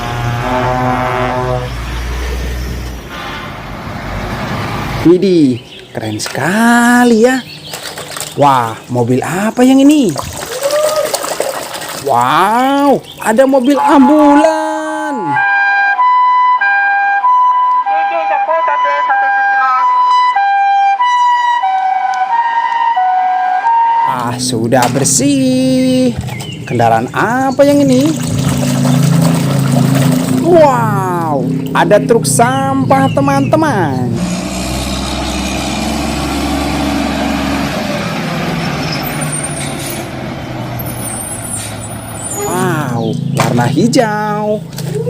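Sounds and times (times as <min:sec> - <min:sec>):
heavy truck engine rumbling: 0:00.0 - 0:06.2, 0:19.8 - 0:45.0
two-tone ambulance siren: 0:13.8 - 0:24.5
wavering siren tone: 0:15.2 - 0:24.2.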